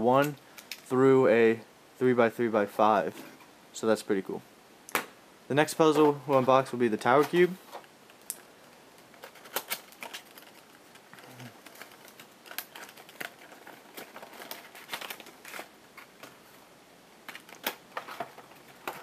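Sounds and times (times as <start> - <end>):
plastic and cardboard crinkling: 5.9 - 16.6, 17.2 - 19.0.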